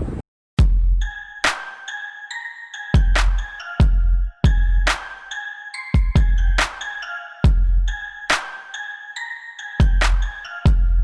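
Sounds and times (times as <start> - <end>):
electronic music with bass drum: 6.0 - 8.6.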